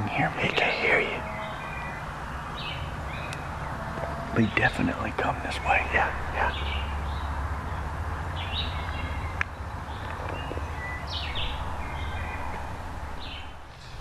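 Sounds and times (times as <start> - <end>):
small songbirds chirping: 0.0 - 14.0
steady low rumble: 4.4 - 14.0.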